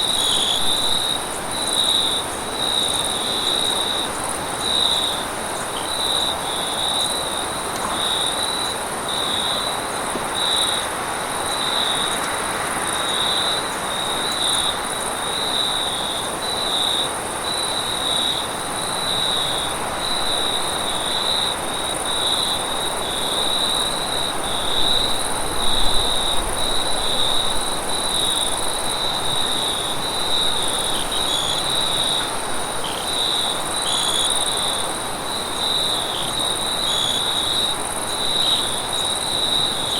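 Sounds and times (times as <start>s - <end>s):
cricket chirping: 0.0s - 39.9s
high-pitched insect trill: 10.4s - 39.9s.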